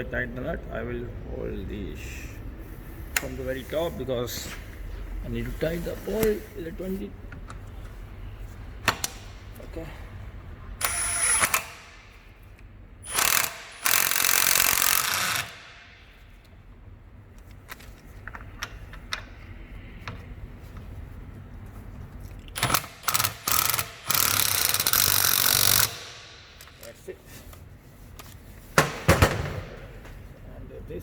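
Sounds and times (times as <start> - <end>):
impact wrench hammering: 10.8 - 12.1, 13.0 - 16.0, 22.6 - 26.6.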